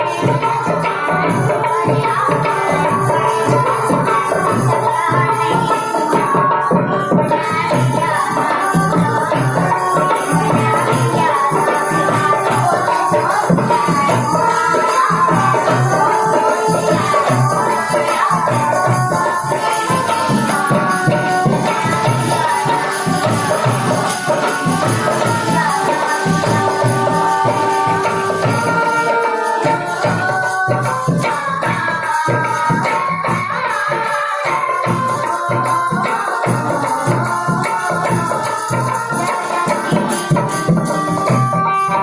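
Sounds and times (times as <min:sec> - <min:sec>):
hand drums beat: 0:00.0 - 0:42.0
jingling percussion: 0:00.0 - 0:42.0.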